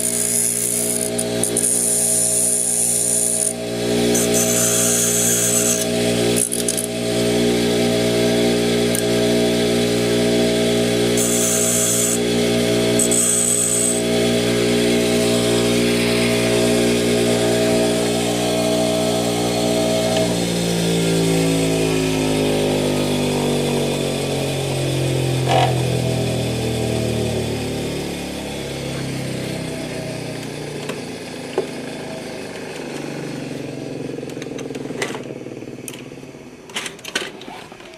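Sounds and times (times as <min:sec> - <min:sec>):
motor humming and winding down: 0:00.0 - 0:34.5.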